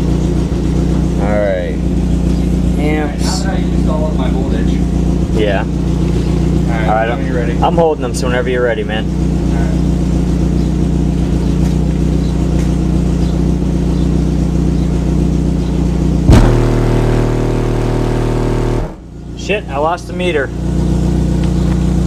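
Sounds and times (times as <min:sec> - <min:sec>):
car engine droning: 0:00.0 - 0:22.0
loud bass test tone: 0:16.0 - 0:19.5.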